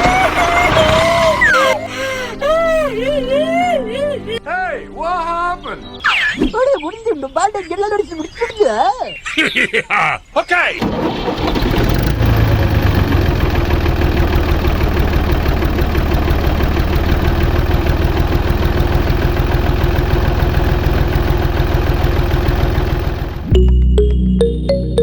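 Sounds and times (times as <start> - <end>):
tractor engine idling: 0.0 - 2.4, 10.8 - 23.5.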